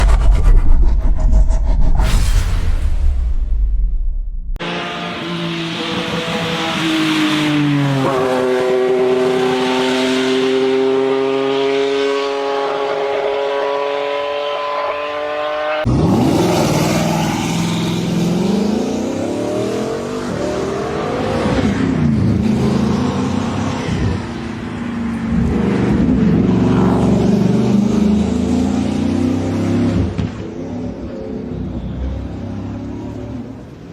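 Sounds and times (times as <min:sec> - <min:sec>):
car engine accelerating and revving: 0:04.6 - 0:30.5.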